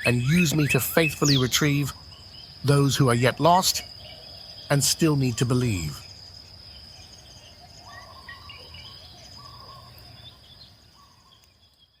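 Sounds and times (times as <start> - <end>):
bird call: 0.0 - 2.0, 7.8 - 10.4
insects trilling: 0.0 - 12.0.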